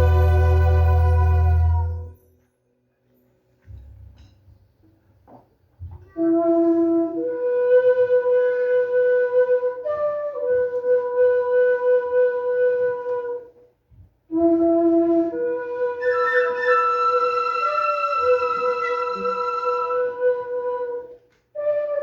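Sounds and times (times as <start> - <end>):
flute playing long held notes: 0.0 - 2.2, 6.2 - 13.6, 14.3 - 22.0.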